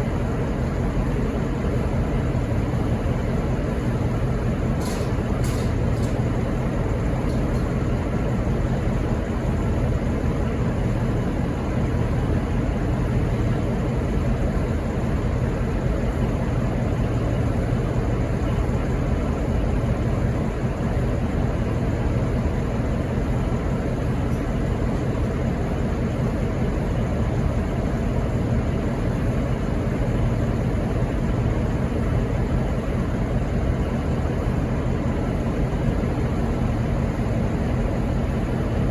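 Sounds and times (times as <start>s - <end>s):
diesel locomotive idling: 0.0s - 38.9s.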